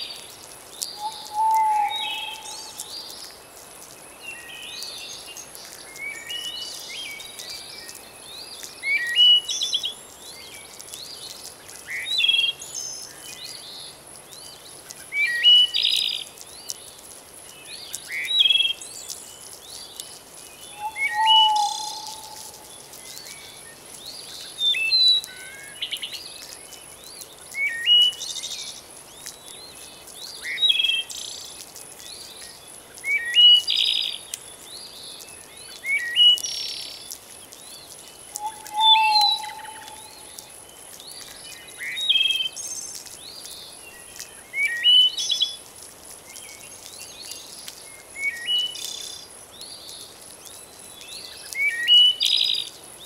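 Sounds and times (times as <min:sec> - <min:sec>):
birds chirping: 0:00.0 - 0:16.9, 0:17.5 - 0:45.6
low whistled bird note: 0:20.8 - 0:22.6, 0:38.4 - 0:40.2.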